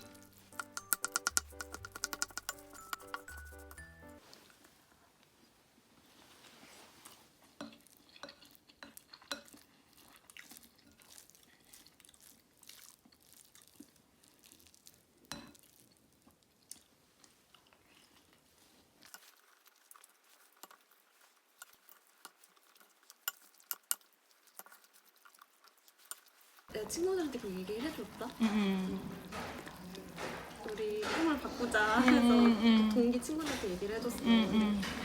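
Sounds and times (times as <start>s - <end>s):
cutlery tapping on dishes: 0.0s - 3.9s, 26.8s - 35.0s
chewing: 0.0s - 4.6s, 6.9s - 35.0s.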